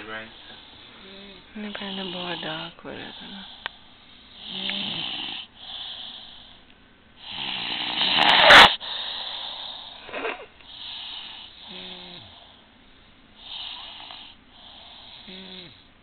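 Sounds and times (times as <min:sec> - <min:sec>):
person snoring: 0:04.4 - 0:06.3, 0:07.2 - 0:10.0, 0:10.8 - 0:12.5, 0:13.4 - 0:15.8.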